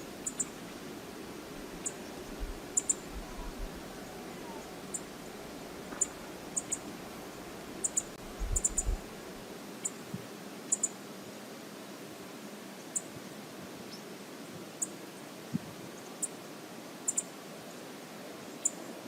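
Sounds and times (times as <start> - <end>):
river water rushing: 0.0 - 8.3.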